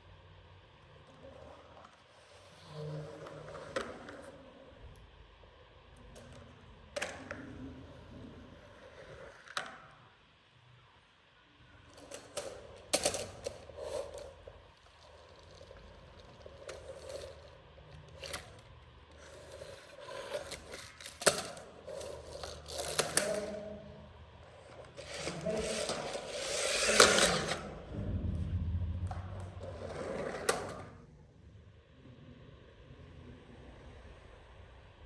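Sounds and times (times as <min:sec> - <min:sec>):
toy vehicles clicking and knocking: 0:11.8 - 0:23.6, 0:24.6 - 0:27.6
toy scraping: 0:12.0 - 0:27.8.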